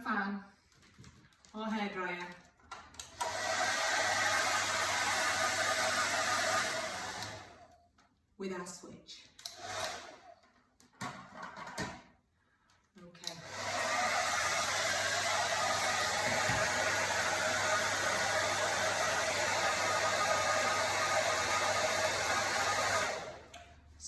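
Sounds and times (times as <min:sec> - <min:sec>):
hair dryer running: 0:03.0 - 0:07.7, 0:09.4 - 0:10.4, 0:13.2 - 0:23.7.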